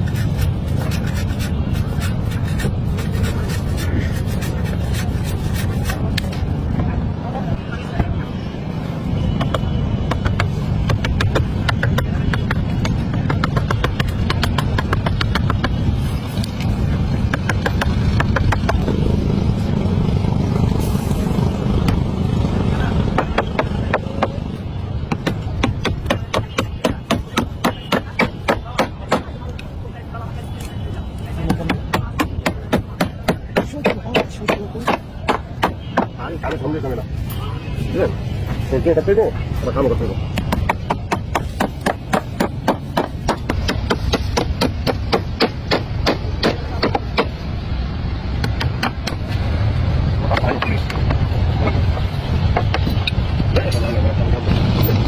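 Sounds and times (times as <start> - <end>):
hammer striking wood: 25.0 - 29.3, 31.5 - 36.2, 40.4 - 47.4
hammer blows on wooden planks: 25.0 - 29.4.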